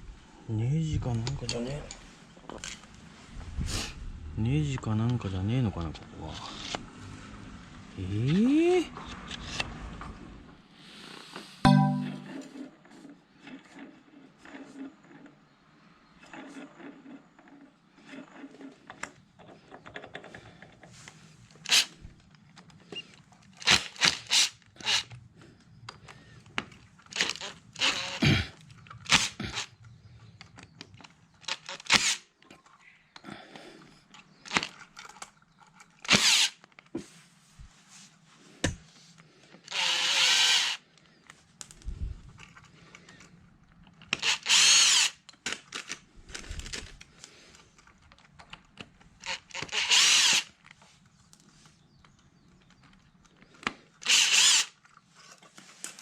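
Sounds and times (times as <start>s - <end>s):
electric drill running: 36.1s - 36.5s, 39.7s - 40.8s, 44.2s - 45.1s, 49.4s - 50.5s, 54.0s - 54.7s.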